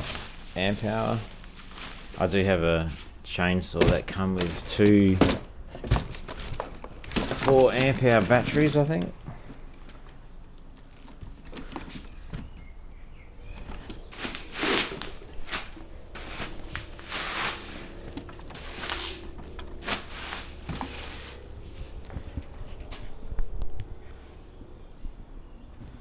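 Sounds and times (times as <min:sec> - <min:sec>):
packaging rustles and scrapes: 0:00.0 - 0:03.2, 0:04.4 - 0:10.1, 0:13.6 - 0:23.2.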